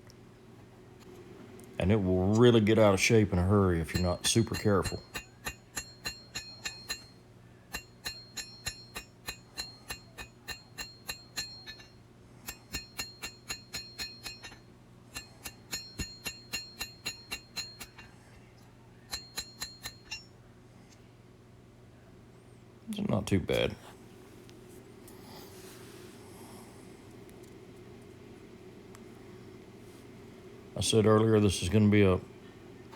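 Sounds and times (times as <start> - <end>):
hammer striking steel on anvil: 3.8 - 14.6, 15.2 - 18.1, 19.1 - 20.3.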